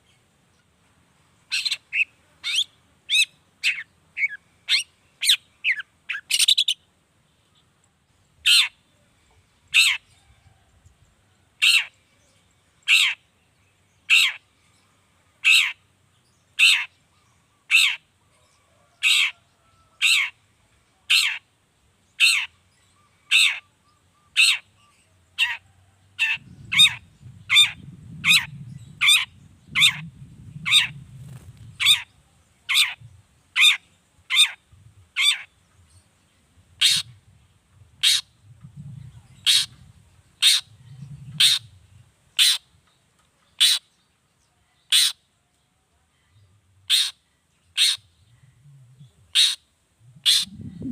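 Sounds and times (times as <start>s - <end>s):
low rumble: 50.0s - 50.9s.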